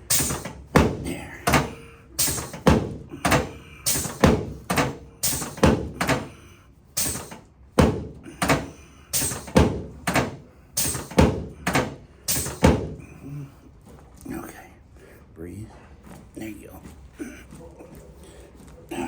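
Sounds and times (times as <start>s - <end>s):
heavy thuds on treatment table: 0.1s - 6.3s, 7.0s - 13.0s.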